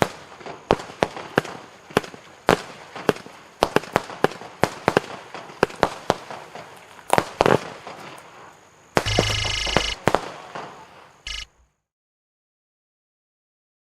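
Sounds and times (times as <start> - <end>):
fireworks bangs: 9.0 - 11.0.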